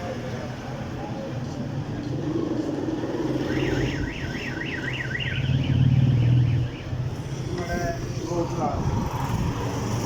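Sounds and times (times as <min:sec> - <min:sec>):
vehicle alarm warbling: 0:03.3 - 0:07.3.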